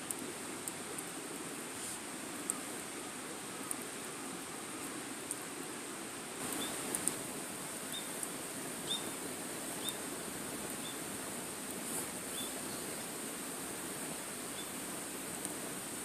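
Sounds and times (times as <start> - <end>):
wood fire crackling: 0.0 - 16.0
faint high chirps: 6.5 - 6.8, 7.9 - 8.2, 8.8 - 9.2, 9.8 - 10.0, 10.8 - 11.0, 12.3 - 13.0, 14.5 - 14.8.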